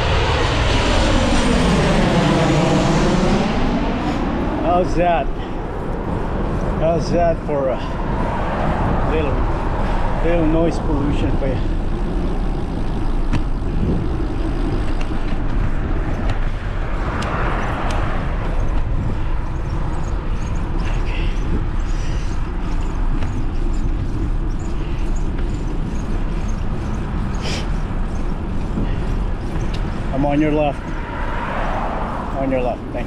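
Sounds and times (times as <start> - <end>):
road traffic noise: 0.0 - 33.0
vehicles passing: 0.0 - 33.0.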